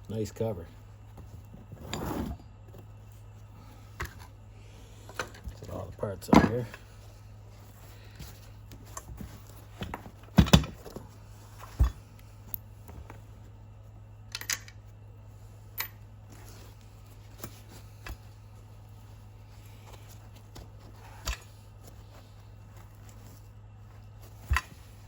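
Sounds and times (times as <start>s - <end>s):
steady low hum: 0.0s - 25.0s
knocks and clicks of parts: 9.8s - 11.0s.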